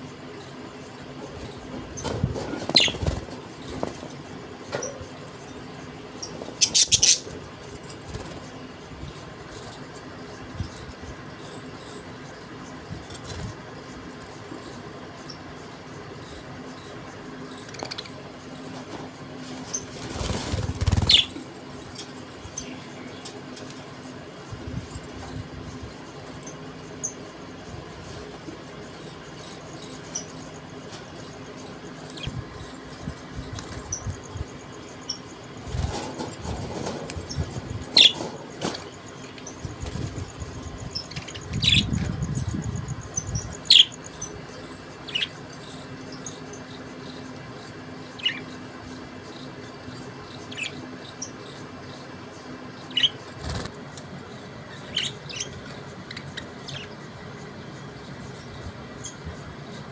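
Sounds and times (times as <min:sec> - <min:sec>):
faint twittering: 0:00.0 - 0:59.9
budgerigars chirping: 0:00.4 - 0:08.4, 0:19.5 - 0:23.1, 0:28.9 - 0:52.1, 0:52.7 - 0:53.7, 0:54.3 - 0:59.2.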